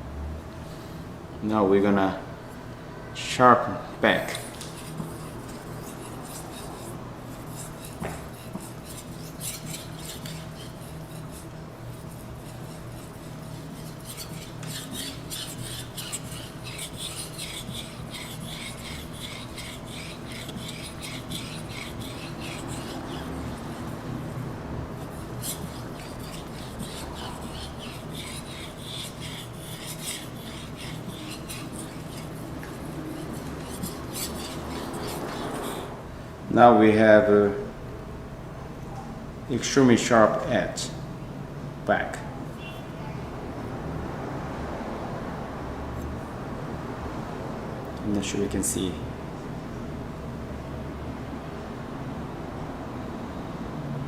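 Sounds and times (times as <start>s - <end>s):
knife rasping on whetstone: 4.2s - 36.0s.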